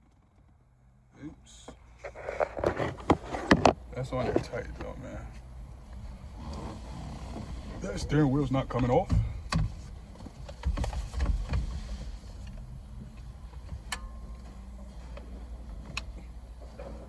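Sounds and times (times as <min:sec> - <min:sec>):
steady low rumble: 0:03.8 - 0:17.0
dull thumps: 0:07.2 - 0:12.1.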